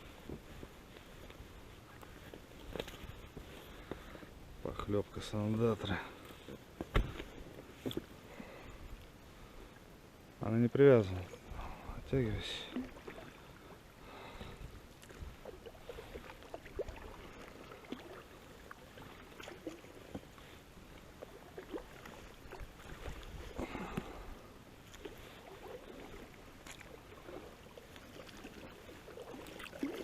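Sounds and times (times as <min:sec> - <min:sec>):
water splashing and dripping: 0:25.5 - 0:30.0.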